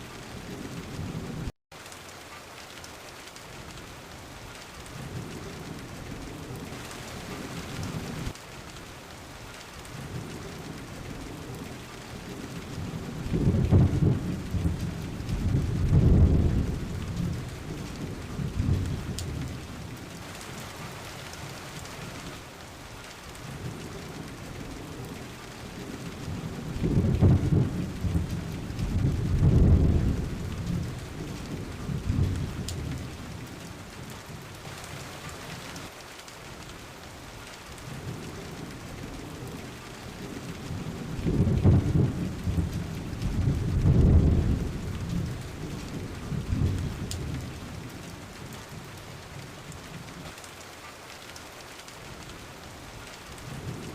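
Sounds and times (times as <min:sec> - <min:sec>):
steady rain falling: 0:00.0 - 0:53.9
thunder rumbling: 0:09.9 - 0:22.3, 0:23.5 - 0:35.7, 0:37.8 - 0:49.0.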